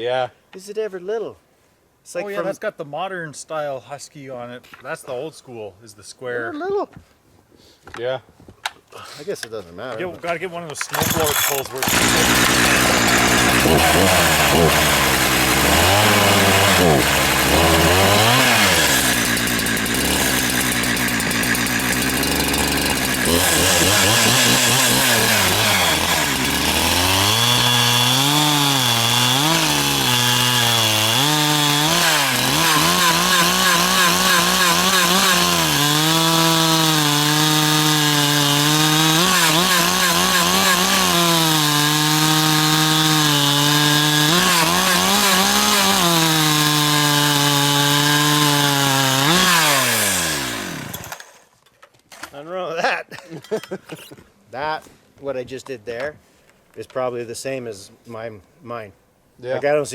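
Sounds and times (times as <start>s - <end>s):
chainsaw cutting log: 10.8s - 51.5s.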